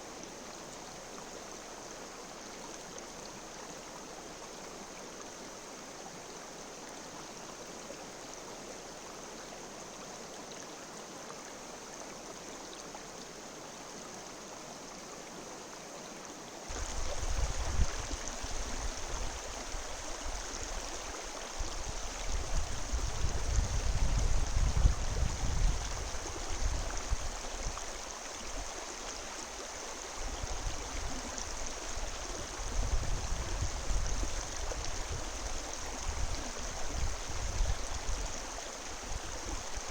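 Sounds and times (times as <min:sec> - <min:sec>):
river water rushing: 0:16.7 - 0:23.3.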